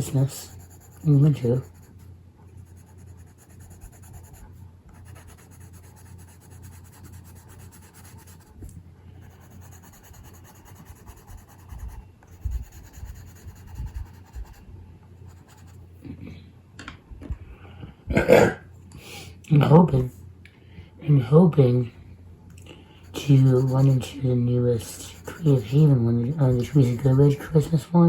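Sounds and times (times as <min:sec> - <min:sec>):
pencil scratching on paper: 0:00.0 - 0:02.0, 0:02.6 - 0:08.5, 0:09.2 - 0:14.6, 0:15.2 - 0:15.8, 0:23.0 - 0:27.8.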